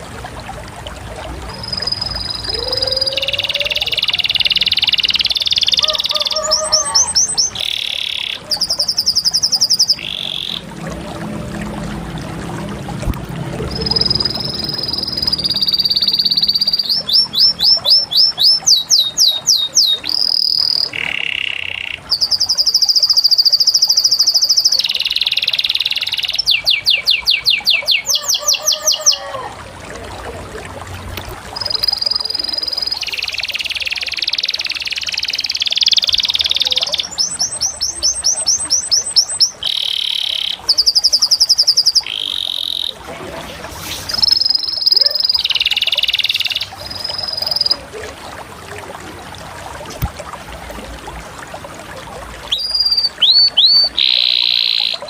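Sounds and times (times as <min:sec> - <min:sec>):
canary singing trills: 0:01.5 - 0:10.7, 0:13.6 - 0:29.4, 0:31.6 - 0:43.0, 0:44.1 - 0:48.0, 0:52.5 - 0:55.0.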